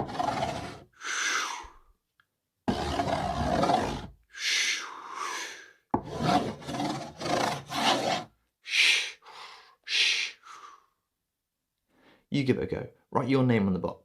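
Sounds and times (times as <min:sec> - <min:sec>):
spoon scraping cardboard: 0:00.0 - 0:00.9, 0:02.7 - 0:04.2, 0:06.0 - 0:08.3.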